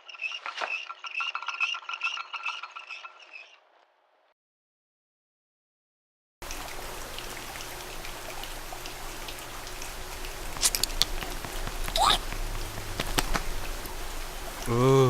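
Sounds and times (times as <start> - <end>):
rain-like patter of drips: 6.4 - 15.0.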